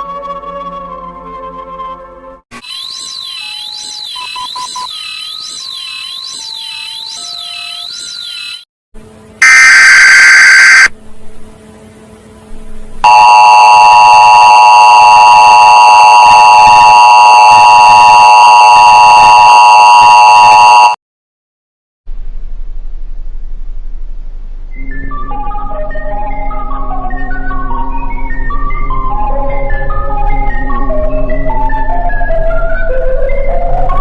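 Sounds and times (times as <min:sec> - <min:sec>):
multi-tone emergency alarm: 0:02.7 - 0:08.6, 0:09.4 - 0:10.9, 0:13.0 - 0:21.0
loud buzz: 0:09.4 - 0:10.9.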